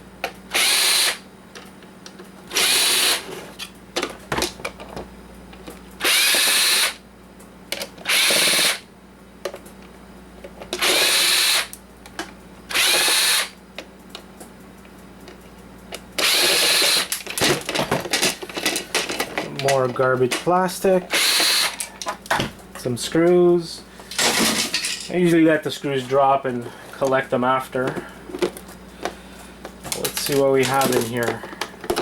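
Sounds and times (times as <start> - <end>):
power drill whining: 0.5 - 1.2, 2.5 - 3.4, 6.0 - 7.0, 8.1 - 8.8, 10.8 - 11.7, 12.7 - 13.6, 16.2 - 17.1, 21.1 - 22.0
clicks and rattles of parts: 1.5 - 6.5, 7.7 - 8.6, 9.4 - 10.9, 13.8 - 23.4, 24.0 - 27.2, 27.8 - 32.0.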